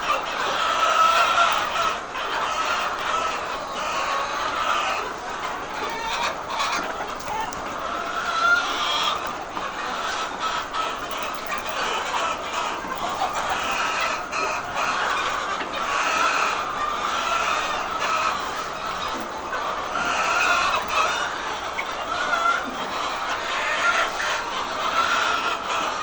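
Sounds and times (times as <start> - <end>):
flock of chickens clucking: 0.0 - 26.0.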